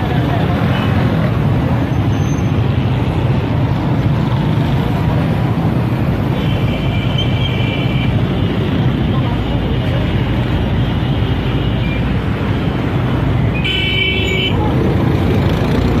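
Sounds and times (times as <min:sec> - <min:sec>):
vehicle engines running: 0:00.0 - 0:16.0.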